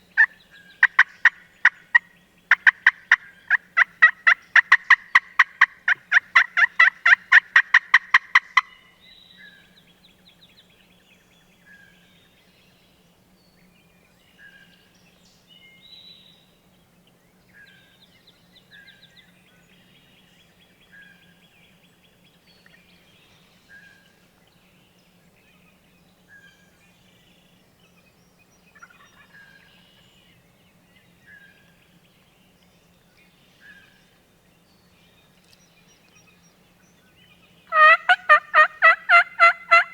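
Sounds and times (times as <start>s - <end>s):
faint songbirds calling: 0.0s - 39.9s
wild turkey calling: 0.2s - 8.8s, 28.7s - 30.0s, 37.7s - 39.9s.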